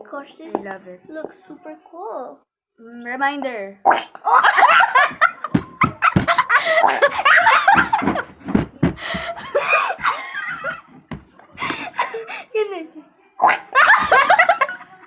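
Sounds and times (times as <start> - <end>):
people laughing and chattering: 4.3 - 15.0.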